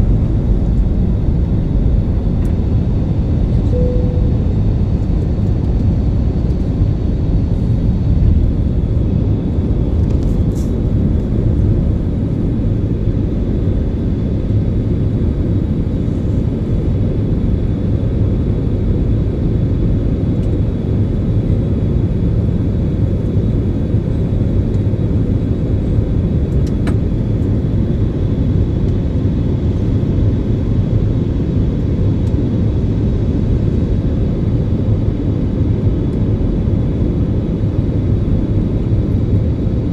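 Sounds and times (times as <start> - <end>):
faint high whine: 0.0 - 5.5
jet engines rumbling: 0.0 - 39.9.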